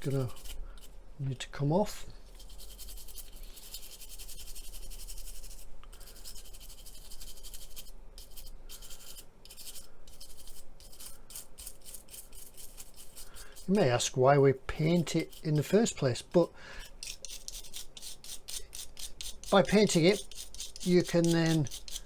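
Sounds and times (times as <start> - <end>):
tool scratching paint off plastic: 2.4 - 13.8, 16.8 - 22.0.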